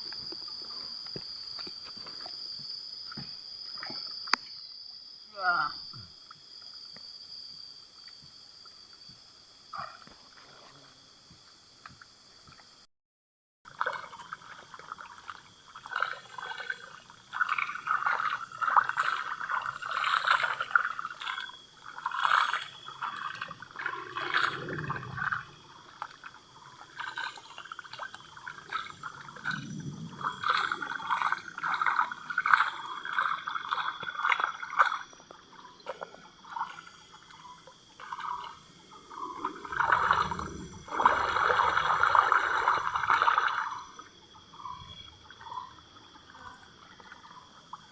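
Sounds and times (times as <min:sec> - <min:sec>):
water sloshing in a pan: 0:13.7 - 0:44.2.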